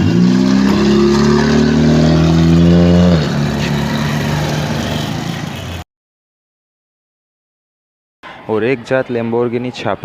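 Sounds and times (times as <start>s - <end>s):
car engine revving: 0.0s - 5.8s.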